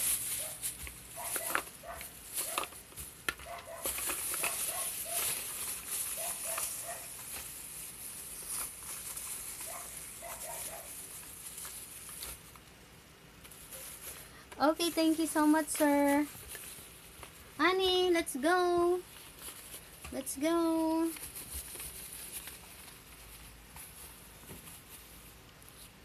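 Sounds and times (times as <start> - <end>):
plastic toys clicking and tapping: 1.2 - 6.8.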